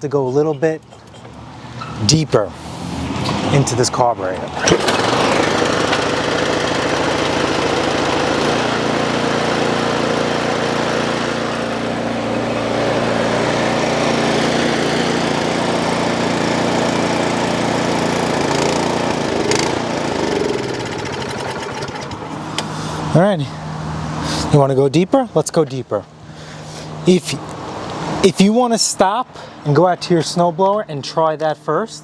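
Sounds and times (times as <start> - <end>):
snowblower engine running: 4.2 - 24.6.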